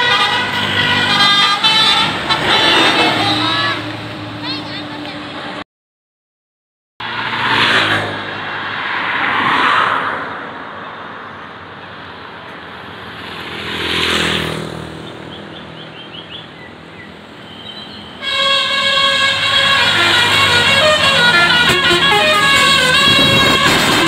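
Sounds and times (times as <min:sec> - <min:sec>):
multi-tone air horn tune: 0:00.0 - 0:03.9, 0:18.1 - 0:24.0
traffic road noise: 0:00.0 - 0:05.6, 0:07.0 - 0:24.0.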